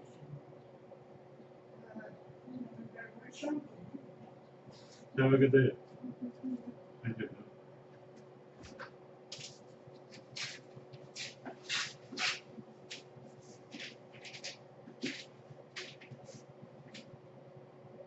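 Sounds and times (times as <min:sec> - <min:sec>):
steady low hum: 0:00.0 - 0:18.0
rustling and scraping noises: 0:08.6 - 0:17.1.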